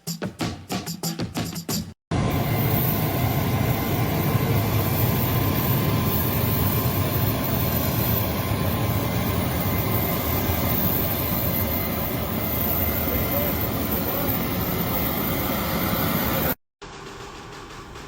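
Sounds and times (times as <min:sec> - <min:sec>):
jet aircraft noise: 0:02.1 - 0:18.0.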